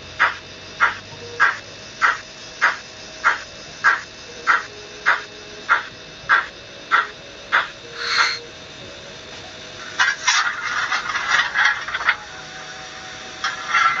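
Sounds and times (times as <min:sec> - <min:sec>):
model locomotive hissing bursts: 0:00.0 - 0:08.5.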